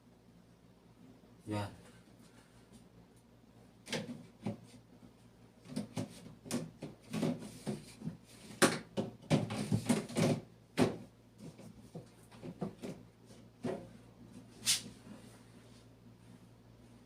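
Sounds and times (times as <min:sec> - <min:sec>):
refrigerator door and fittings knocking: 0:08.8 - 0:11.1.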